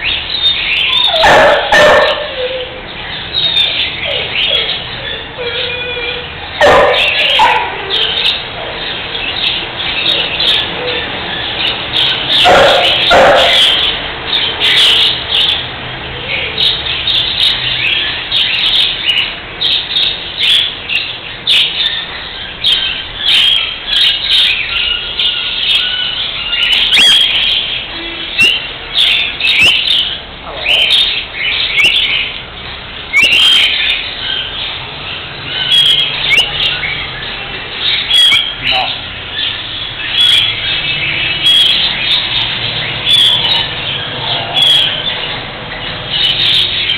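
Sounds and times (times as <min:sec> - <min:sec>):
cockatiel chirping: 0:28.3 - 0:32.4, 0:33.1 - 0:34.6, 0:35.5 - 0:37.1.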